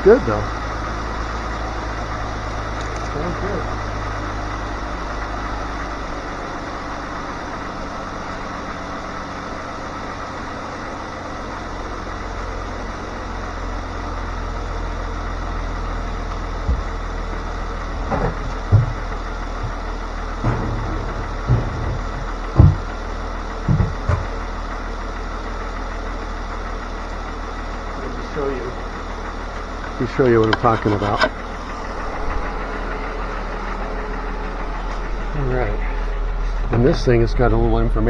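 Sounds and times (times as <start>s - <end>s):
car engine idling: 0.0s - 38.0s
short dull thumps: 15.8s - 24.7s.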